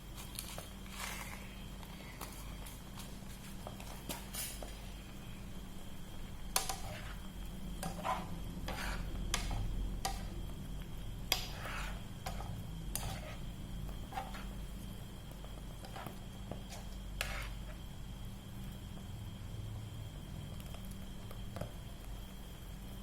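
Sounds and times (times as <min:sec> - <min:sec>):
utensil scraping a cooking pot: 0:06.5 - 0:10.4, 0:11.3 - 0:14.7, 0:15.7 - 0:17.8.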